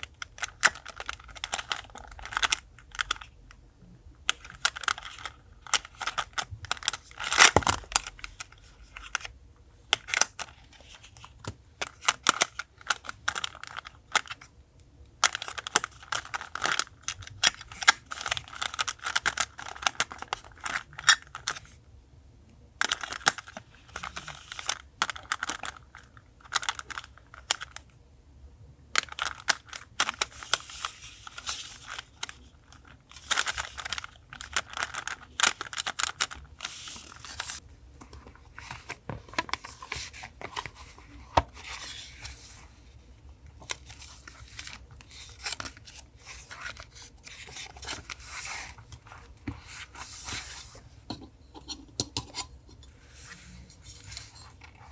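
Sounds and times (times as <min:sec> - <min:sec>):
paper crinkling and rustling: 0:29.1 - 0:51.0, 0:52.9 - 0:54.9.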